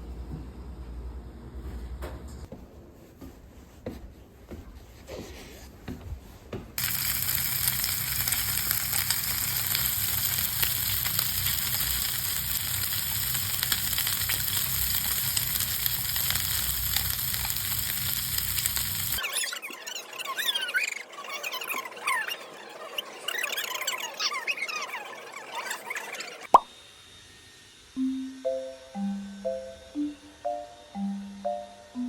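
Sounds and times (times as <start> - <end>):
food sizzling in frying pan: 6.8 - 19.2.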